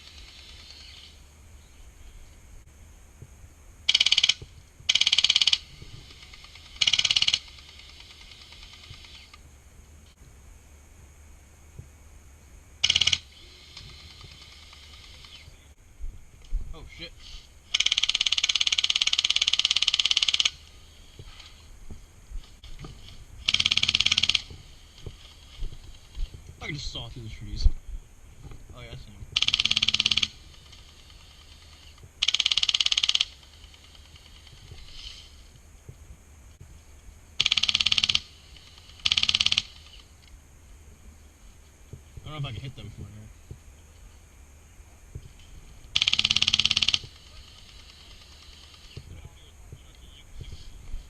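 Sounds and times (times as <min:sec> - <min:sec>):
airsoft gun firing bursts: 0:03.9 - 0:09.1, 0:12.8 - 0:13.3, 0:17.7 - 0:20.6, 0:23.4 - 0:24.5, 0:29.4 - 0:34.6, 0:37.4 - 0:40.0, 0:45.9 - 0:48.9.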